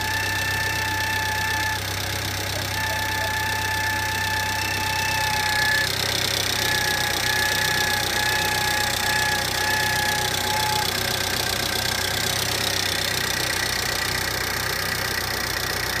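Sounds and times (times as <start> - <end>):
car engine idling: 0.0 - 16.0
high whine from engine accessories: 0.0 - 16.0.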